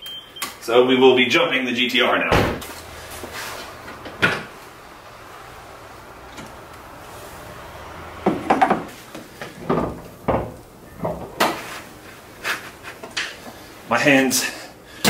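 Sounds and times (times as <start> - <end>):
jumper cables clunking and clattering: 2.4 - 11.6.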